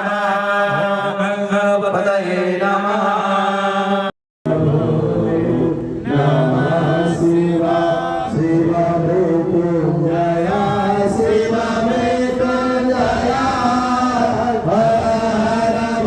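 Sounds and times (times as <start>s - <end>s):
voices chanting mantras: 0.0s - 16.0s.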